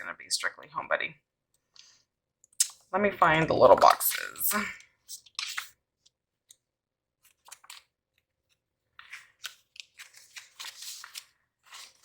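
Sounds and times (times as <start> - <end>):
book pages flipping: 5.0 - 6.6, 7.2 - 12.0.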